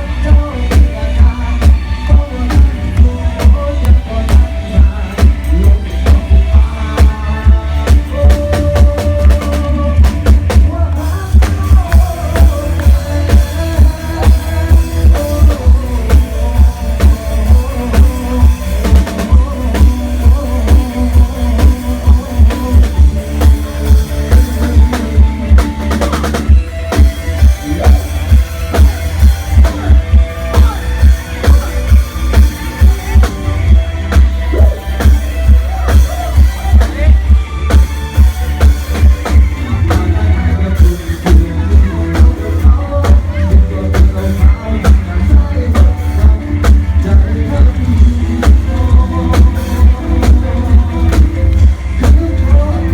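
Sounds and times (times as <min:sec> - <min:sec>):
loud music with heavy bass drum: 0:00.0 - 0:52.9.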